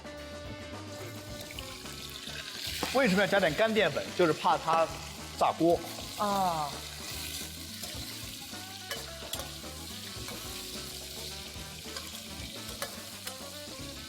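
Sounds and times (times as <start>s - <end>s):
deep-frying sizzle: 0.8s - 14.0s
sharp clicks in frying oil: 2.6s - 3.0s, 8.9s - 13.6s.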